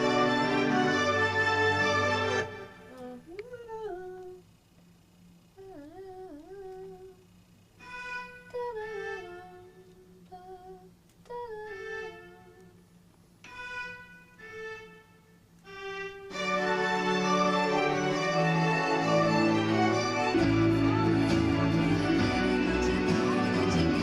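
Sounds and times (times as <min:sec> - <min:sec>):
bowed string melody: 0:00.0 - 0:02.8, 0:15.8 - 0:24.0.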